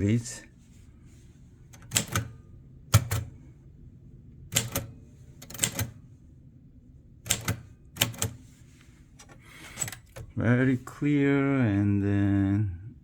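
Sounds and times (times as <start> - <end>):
typewriter keys clacking: 1.8 - 2.3, 4.6 - 5.9, 7.3 - 8.4.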